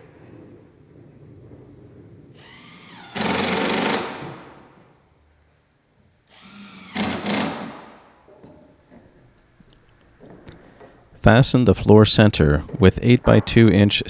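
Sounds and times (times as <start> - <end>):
power drill drilling into wood: 2.4 - 4.6, 6.3 - 8.0.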